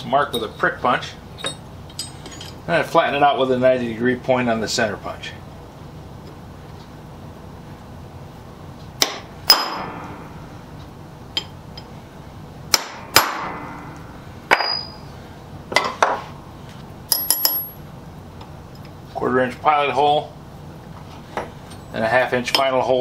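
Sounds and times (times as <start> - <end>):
hammer striking metal punch: 9.0 - 10.4, 12.7 - 15.0, 17.1 - 17.8.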